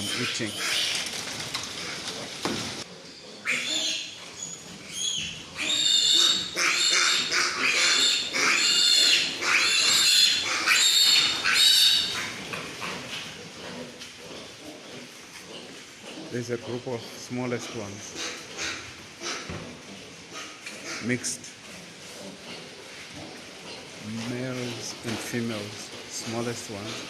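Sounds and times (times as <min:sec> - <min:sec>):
piglets squealing: 0:00.0 - 0:01.0, 0:03.3 - 0:12.4, 0:18.1 - 0:19.5.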